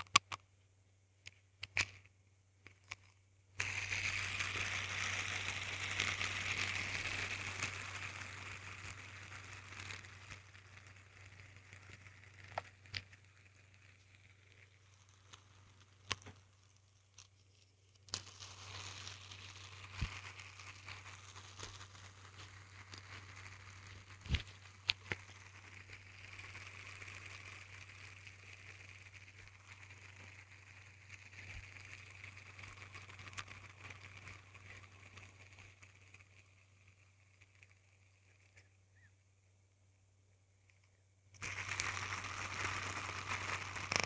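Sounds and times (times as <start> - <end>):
spinner bearing whirring: 2.6 - 39.1, 41.3 - 44.0
hand spinner clicks: 18.0 - 38.7, 40.7 - 44.0.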